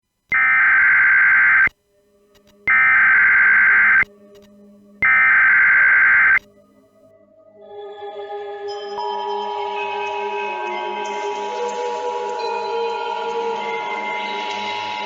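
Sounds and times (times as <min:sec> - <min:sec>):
buzzing digital data tones: 0:00.3 - 0:01.7, 0:02.7 - 0:04.0, 0:05.0 - 0:06.4.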